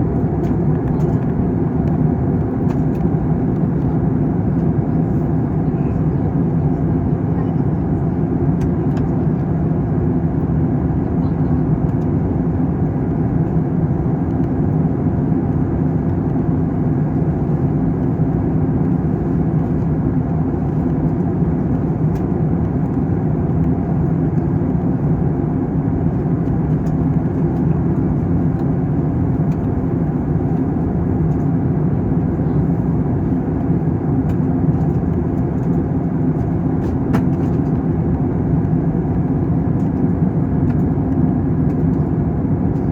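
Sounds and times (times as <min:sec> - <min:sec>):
jet engine cabin drone: 0:00.0 - 0:42.9.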